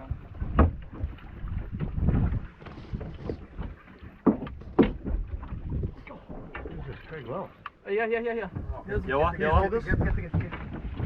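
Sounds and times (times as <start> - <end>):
wind buffeting microphone: 0.0 - 7.1, 8.4 - 11.0
sharp knocks: 4.2 - 5.2.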